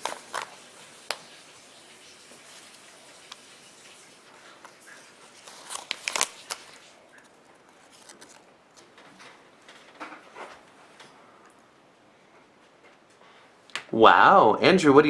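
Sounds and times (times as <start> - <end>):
plastic crinkles and clicks: 0.0 - 1.4, 4.6 - 11.6.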